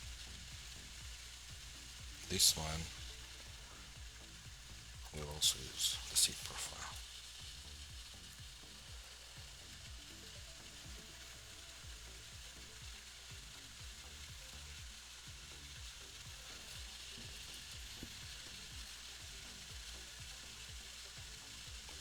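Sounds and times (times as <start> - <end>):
faint background hiss: 0.0 - 22.0
low hum: 0.0 - 22.0.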